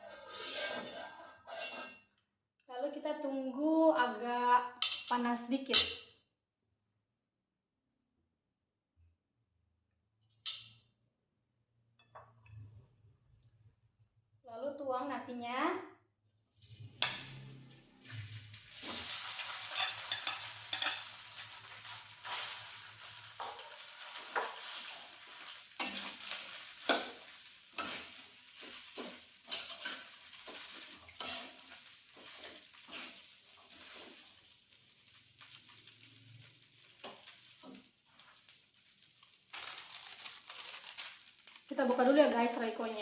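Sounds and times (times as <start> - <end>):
rice sizzling in hot oil: 0.0 - 1.9, 16.7 - 43.0
spatula scraping a pan: 0.0 - 2.2, 16.7 - 38.4.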